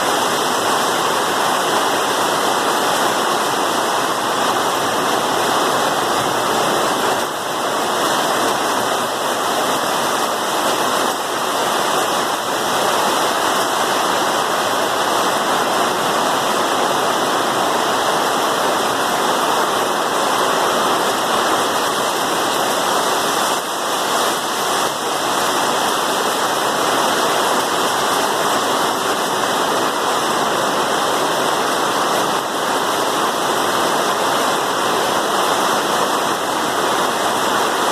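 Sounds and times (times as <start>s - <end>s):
heavy rain pouring: 0.0s - 37.9s.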